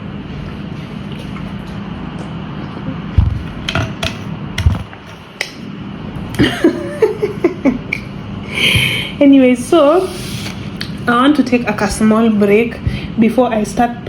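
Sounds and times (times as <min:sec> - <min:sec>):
sharp knocks and thumps: 0:03.2 - 0:05.2.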